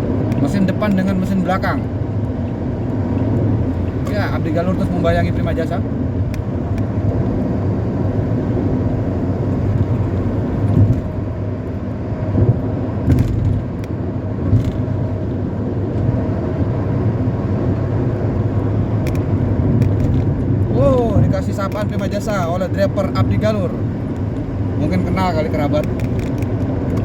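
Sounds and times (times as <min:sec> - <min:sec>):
highway traffic drone: 0:00.0 - 0:27.0.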